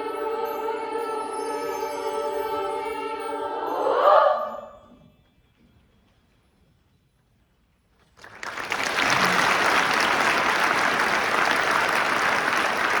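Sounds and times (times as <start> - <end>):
choir singing: 0.0 - 5.0
audience applauding: 8.2 - 13.0.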